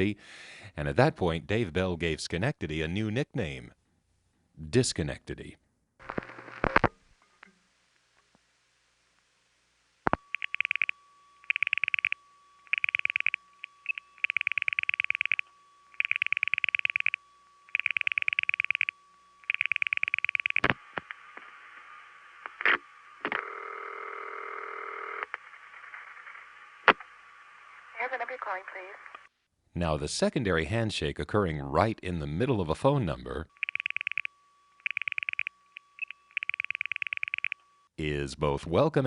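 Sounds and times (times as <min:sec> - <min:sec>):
buzzy telephone tone: 0:06.0 - 0:06.9, 0:10.0 - 0:26.6, 0:33.4 - 0:38.0
faint steady line tone: 0:07.1 - 0:29.3, 0:33.5 - 0:38.0
telephone dial pulse clicks: 0:10.1 - 0:20.8, 0:33.6 - 0:37.6.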